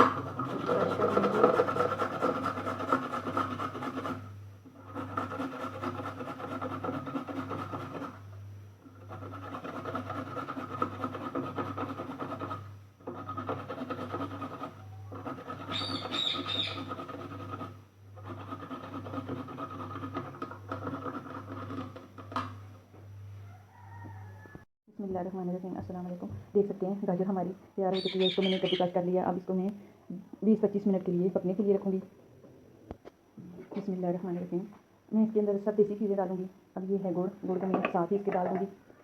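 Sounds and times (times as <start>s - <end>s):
carrots grated on metal grater: 0.0s - 8.2s, 9.0s - 22.1s.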